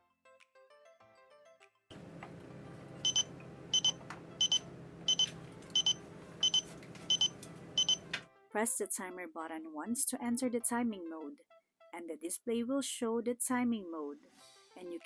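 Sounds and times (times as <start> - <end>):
faint room hum: 1.9 - 8.2
high-pitched double beeps: 3.0 - 8.0.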